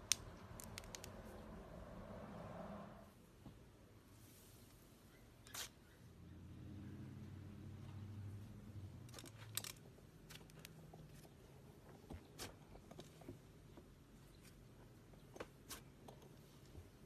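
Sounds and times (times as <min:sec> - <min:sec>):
slime clicking and crackling: 0:00.0 - 0:01.2
low hum: 0:00.4 - 0:03.2.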